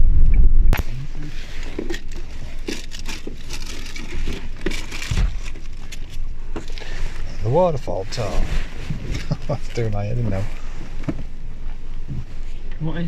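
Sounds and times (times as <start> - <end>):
car driving rumble: 0.0 - 13.0
crinkly rustling: 1.2 - 12.5.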